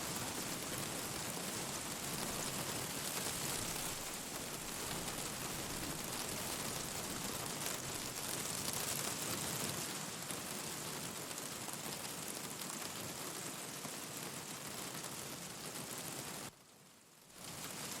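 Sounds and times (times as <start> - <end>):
wood fire crackling: 0.0 - 9.0
steady rain hiss: 0.0 - 18.0.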